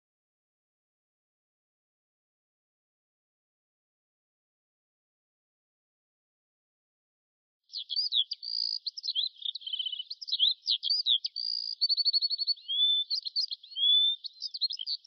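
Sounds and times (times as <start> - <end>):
songbird singing: 7.7 - 15.0.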